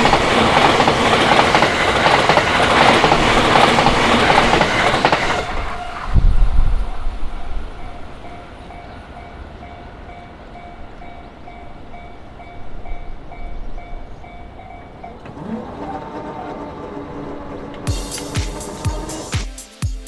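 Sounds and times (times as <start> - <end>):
passing train: 0.0 - 19.4
music: 17.9 - 20.0.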